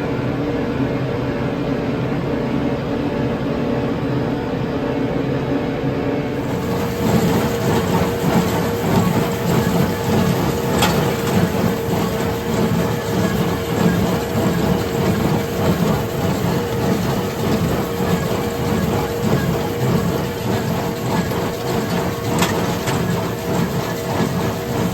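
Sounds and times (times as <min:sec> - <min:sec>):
tractor running: 0:06.4 - 0:24.9.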